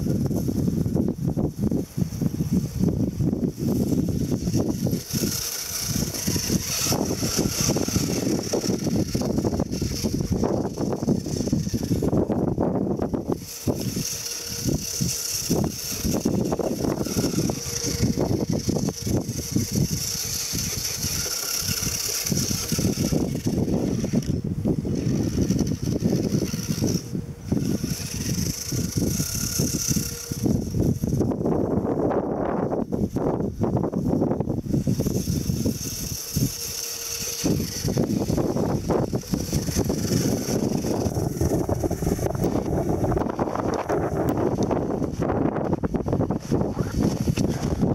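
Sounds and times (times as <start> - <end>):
rough rumbling on snow: 0.0 - 31.9, 32.7 - 47.9
electric motor whine: 0.0 - 47.9.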